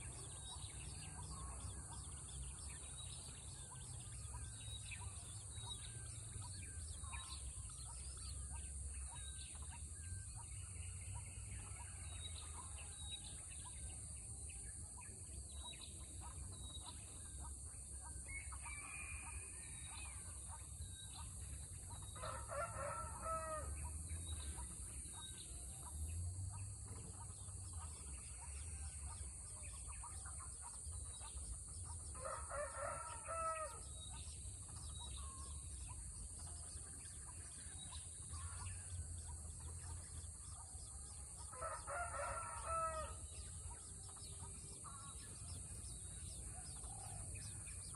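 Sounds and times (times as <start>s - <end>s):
birds chirping: 0.0s - 47.9s
rooster crowing: 22.2s - 23.8s, 32.2s - 33.8s, 41.6s - 43.2s.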